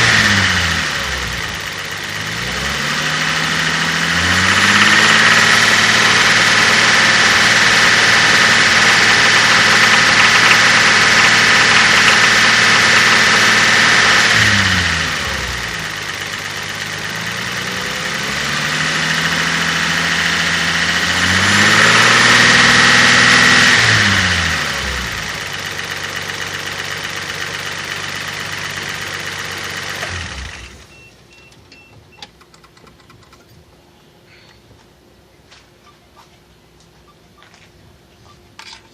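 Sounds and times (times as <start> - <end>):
car engine revving and idling: 0.0 - 31.0.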